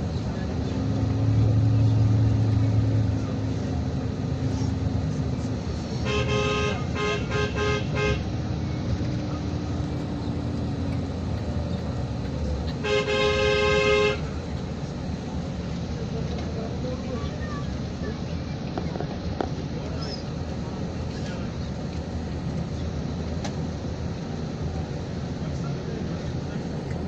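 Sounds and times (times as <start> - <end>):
engine and road noise: 0.0 - 27.0
vehicle horn honking: 6.0 - 8.3, 12.7 - 14.3.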